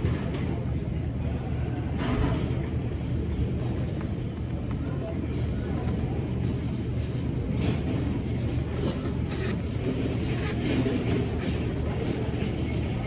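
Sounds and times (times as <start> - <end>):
low rumble of airport ambience: 0.0 - 13.0.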